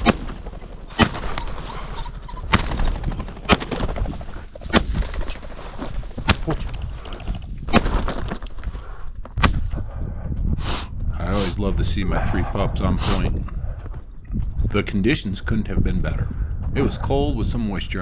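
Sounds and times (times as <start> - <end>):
shotgun shots: 0.0 - 5.3
wind rumble on microphone: 0.0 - 18.0.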